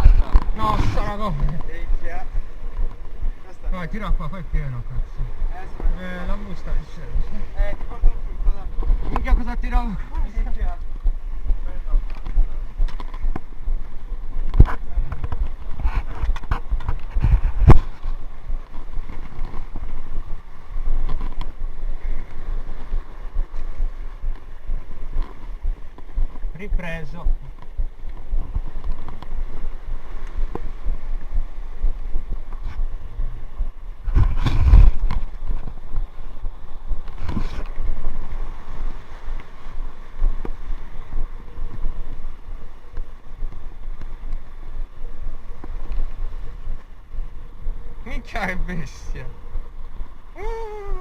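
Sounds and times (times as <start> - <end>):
rough sea: 0.0 - 51.0
wave surging and splashing: 0.0 - 51.0
wind buffeting microphone: 0.0 - 51.0.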